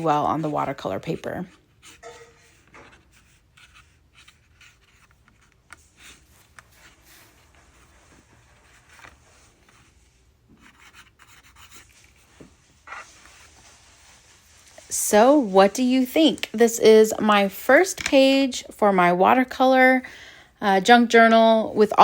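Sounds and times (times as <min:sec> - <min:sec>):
pen scratching on paper: 0:00.1 - 0:10.0, 0:10.6 - 0:14.2.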